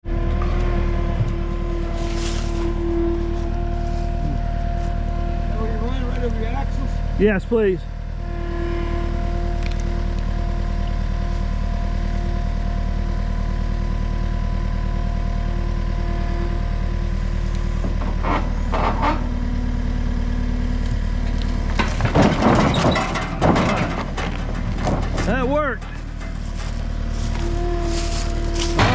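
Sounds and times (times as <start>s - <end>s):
loader engine running: 0.0s - 28.9s
knocking and scraping: 17.8s - 19.3s, 21.5s - 28.9s.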